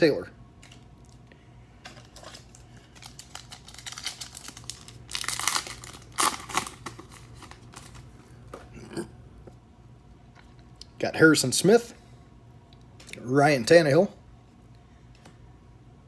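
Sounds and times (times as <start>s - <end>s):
wrapper tearing and crinkling: 2.0s - 8.2s.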